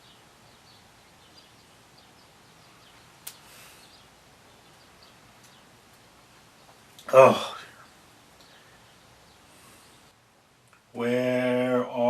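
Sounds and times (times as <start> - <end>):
faint bird chirps: 0.0 - 10.2
steady background hiss: 0.0 - 12.0.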